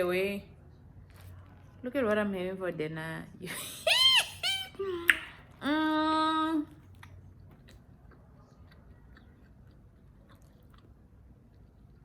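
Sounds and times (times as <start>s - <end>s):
chewing with small clicks: 6.8s - 12.0s.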